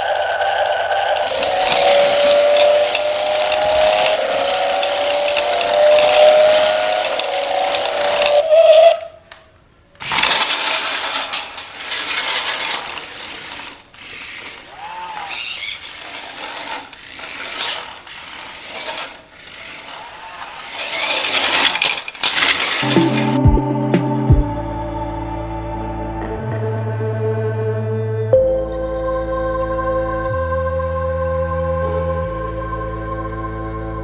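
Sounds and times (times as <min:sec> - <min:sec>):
toy gears whirring and clicking: 0:00.0 - 0:09.1, 0:10.0 - 0:23.3
music: 0:22.8 - 0:34.0.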